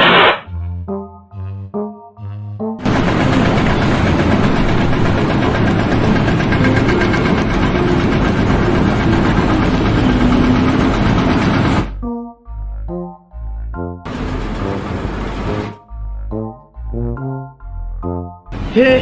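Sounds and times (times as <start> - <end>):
loud engine pulsing: 2.8 - 12.0, 14.1 - 16.4.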